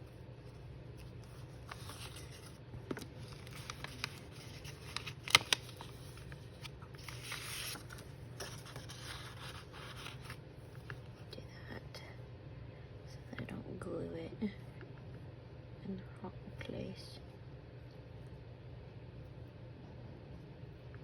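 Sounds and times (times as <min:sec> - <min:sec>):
paper rustling and scraping: 0:00.4 - 0:10.4.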